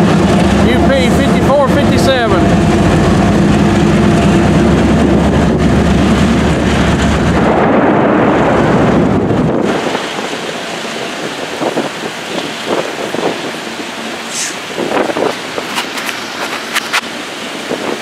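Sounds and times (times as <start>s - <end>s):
diesel train rumbling past: 0.0s - 18.0s
wind on microphone: 0.0s - 18.0s
rain: 4.8s - 18.0s.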